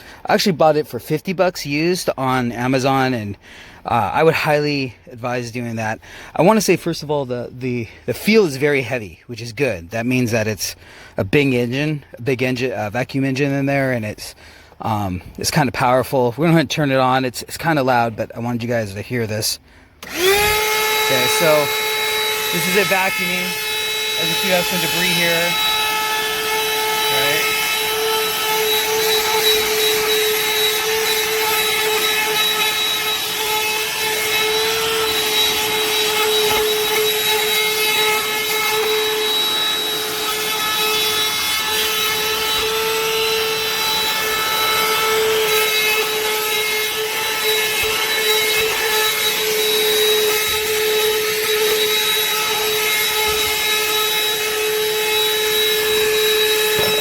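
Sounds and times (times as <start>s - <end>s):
handheld vacuum whining: 19.9s - 57.0s.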